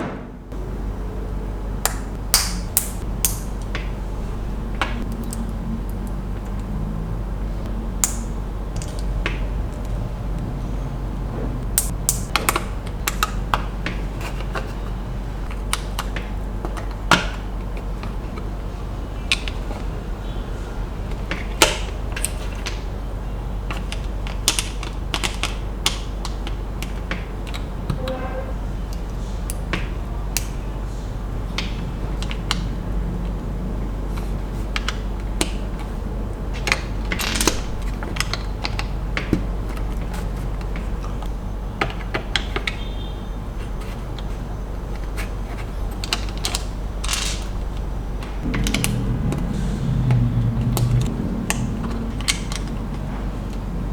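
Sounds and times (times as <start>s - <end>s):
steady low hum: 0.0s - 22.2s, 42.8s - 53.9s.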